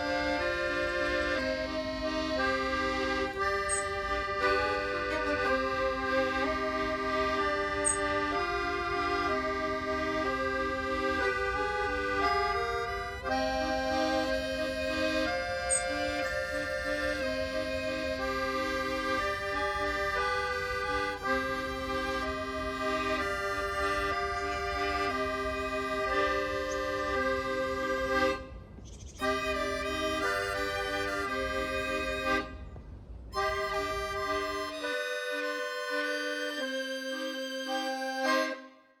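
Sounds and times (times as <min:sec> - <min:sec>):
instrumental background music: 0:00.0 - 0:28.5.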